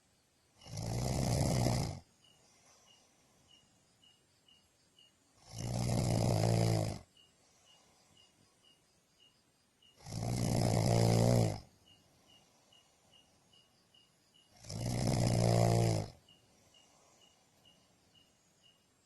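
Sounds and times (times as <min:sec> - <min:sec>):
person snoring: 0:00.6 - 0:02.9, 0:05.4 - 0:07.1, 0:10.0 - 0:11.7, 0:14.5 - 0:16.2.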